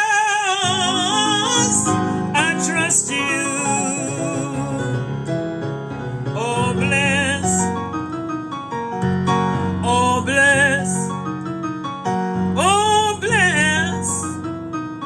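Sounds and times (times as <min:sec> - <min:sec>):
person singing with vibrato: 0:00.0 - 0:05.4, 0:06.4 - 0:07.8, 0:09.7 - 0:11.1, 0:12.6 - 0:14.4
piano chords: 0:00.0 - 0:15.0.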